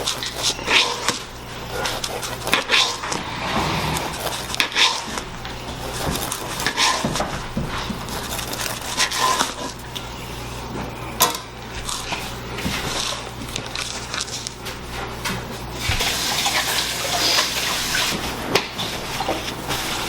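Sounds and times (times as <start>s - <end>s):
low hum: 2.9s - 5.9s.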